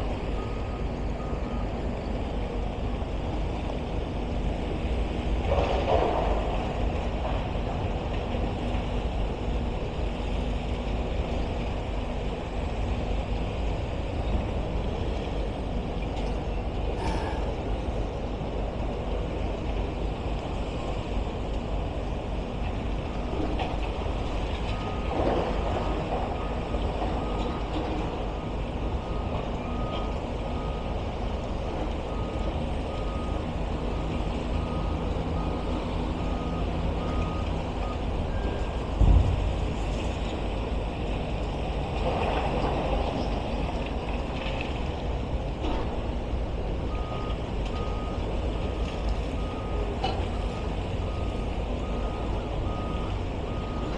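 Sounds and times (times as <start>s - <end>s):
heavy machinery rumbling: 0.0s - 53.9s
reversing alarm beeping: 0.3s - 1.9s, 24.6s - 39.5s, 46.8s - 53.9s.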